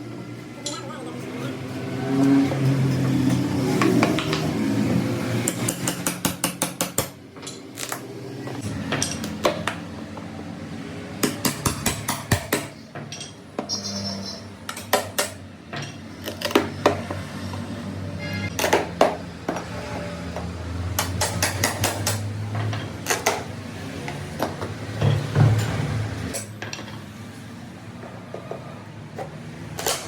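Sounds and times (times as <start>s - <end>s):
metal tools clattering: 7.4s - 8.0s, 12.9s - 16.6s.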